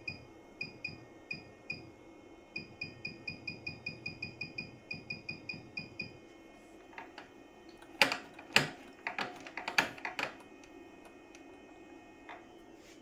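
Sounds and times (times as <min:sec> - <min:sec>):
sewing machine beeping: 0:02.6 - 0:06.2.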